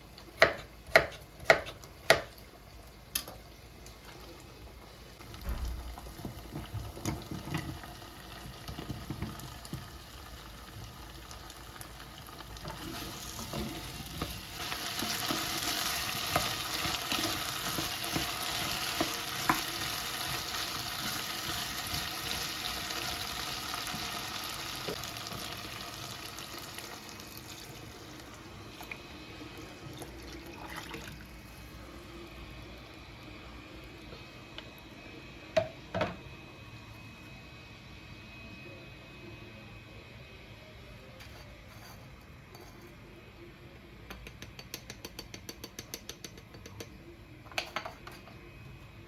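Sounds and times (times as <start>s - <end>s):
food sizzling in a pan: 5.8s - 30.5s.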